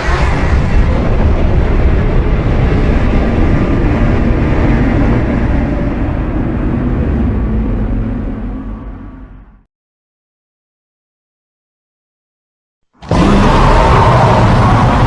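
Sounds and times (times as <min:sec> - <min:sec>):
deep monster rumble: 0:00.0 - 0:09.7, 0:13.0 - 0:15.0.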